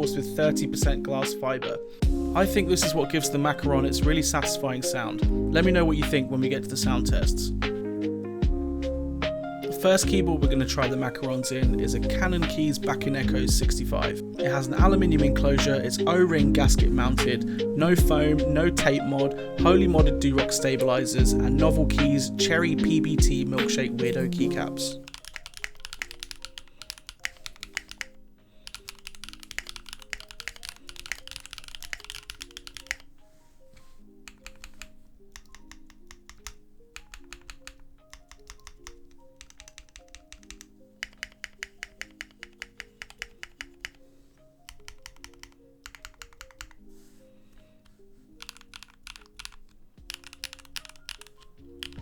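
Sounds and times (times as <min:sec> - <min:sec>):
soft background music: 0:00.0 - 0:52.0
mechanical keyboard typing: 0:25.0 - 0:33.1, 0:34.2 - 0:44.0, 0:44.7 - 0:46.8, 0:48.4 - 0:52.0.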